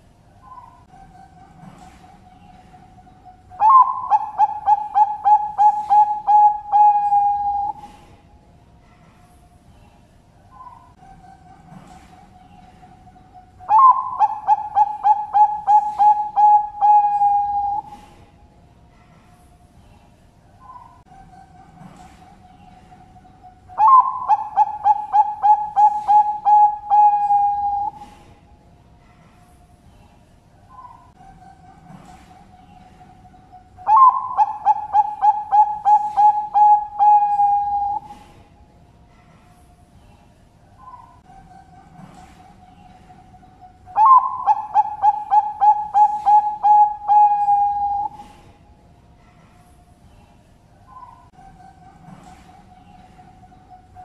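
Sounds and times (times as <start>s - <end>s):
dove cooing song: 0.0s - 8.2s, 10.5s - 18.2s, 20.6s - 28.4s, 30.7s - 38.4s, 40.8s - 48.5s, 50.9s - 54.0s
faint cooing of other doves: 0.0s - 18.4s, 19.0s - 38.6s, 40.8s - 48.7s, 49.3s - 54.0s.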